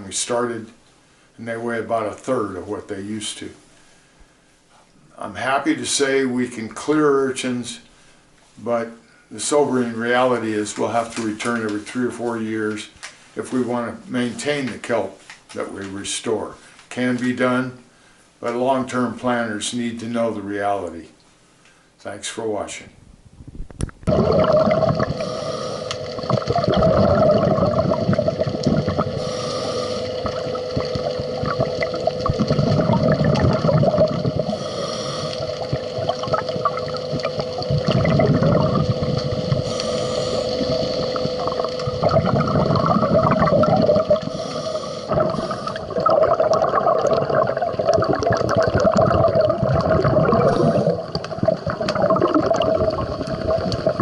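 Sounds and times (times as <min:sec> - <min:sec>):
steady mechanical hum: 0:00.0 - 0:54.0
exhaled bubbles from regulator: 0:24.0 - 0:54.0
water gurgling: 0:24.0 - 0:54.0.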